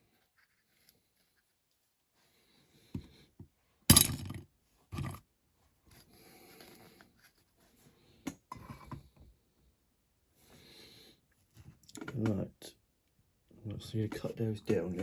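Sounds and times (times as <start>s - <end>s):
faint rustling and scraping: 0.0s - 3.8s, 4.6s - 9.5s.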